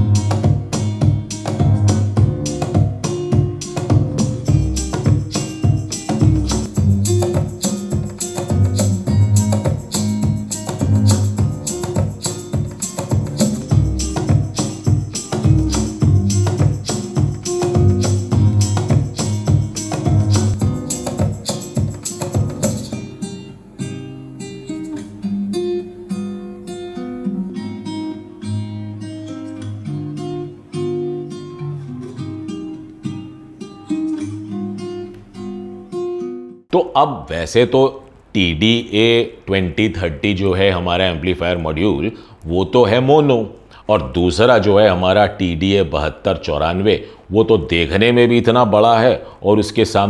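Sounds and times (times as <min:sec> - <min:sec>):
steady percussive beat: 0:00.0 - 0:23.1
plucked guitar notes: 0:00.0 - 0:36.6
strummed acoustic guitar: 0:00.0 - 0:36.7.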